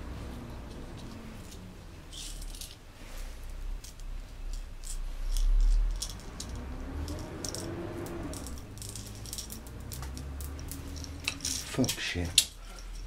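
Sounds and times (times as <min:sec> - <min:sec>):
plastic bbs clicking and rattling: 0:03.8 - 0:13.0.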